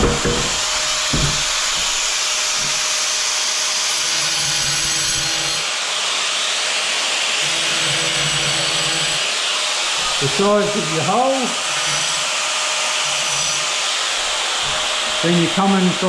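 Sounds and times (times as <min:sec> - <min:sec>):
low knocks: 0:00.0 - 0:02.8
angle grinder cutting tile: 0:00.0 - 0:16.0.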